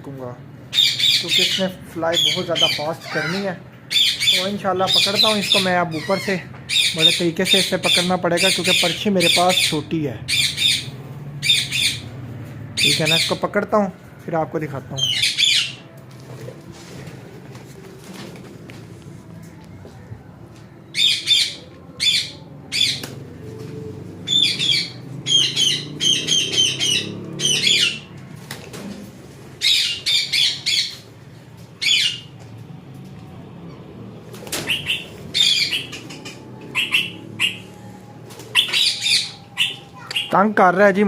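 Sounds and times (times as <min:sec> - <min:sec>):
parrots squawking: 0:00.7 - 0:12.2, 0:12.8 - 0:13.5, 0:15.0 - 0:15.9, 0:20.9 - 0:23.0, 0:24.2 - 0:28.1, 0:29.6 - 0:31.0, 0:31.8 - 0:32.3, 0:34.6 - 0:37.9, 0:38.5 - 0:40.4
wings flapping: 0:16.1 - 0:18.9, 0:28.2 - 0:29.2, 0:34.2 - 0:36.9.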